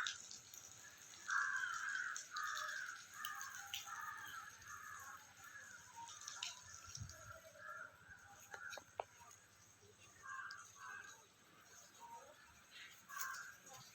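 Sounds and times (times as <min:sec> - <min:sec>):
crow cawing: 0:01.0 - 0:09.4, 0:10.1 - 0:11.3, 0:12.7 - 0:13.8.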